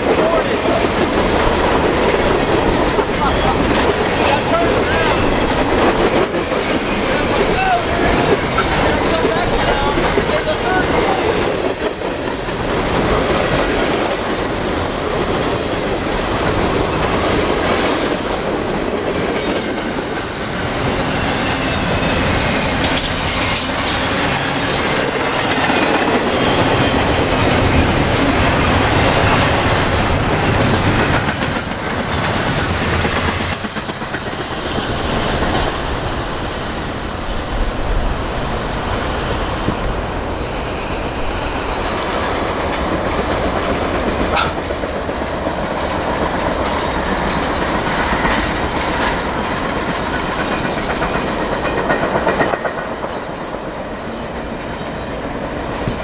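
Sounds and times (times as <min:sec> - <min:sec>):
freight train rolling on rails: 0:00.0 - 0:56.0
wheels clacking over rail joints: 0:00.0 - 0:56.0.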